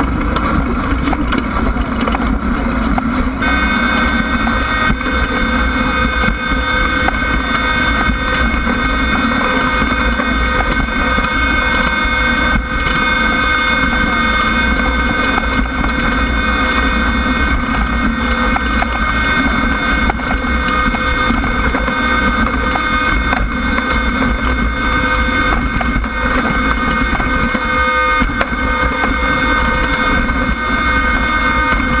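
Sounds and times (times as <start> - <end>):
race car engine running: 0.0 - 32.0
wind noise: 0.0 - 32.0.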